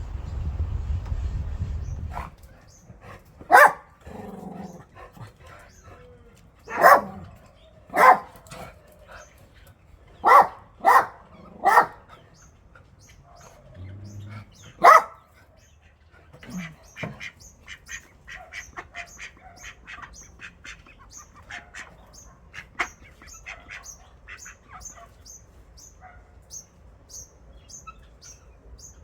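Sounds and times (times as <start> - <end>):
dog barking: 3.5 - 4.0, 6.7 - 7.3, 7.9 - 8.4, 10.2 - 12.1, 14.7 - 15.3, 26.0 - 26.4.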